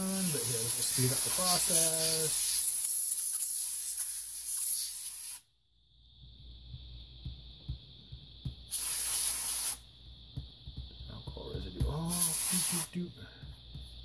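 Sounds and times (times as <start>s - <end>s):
canned air spraying: 0.0s - 5.5s, 8.6s - 9.9s, 11.8s - 13.8s.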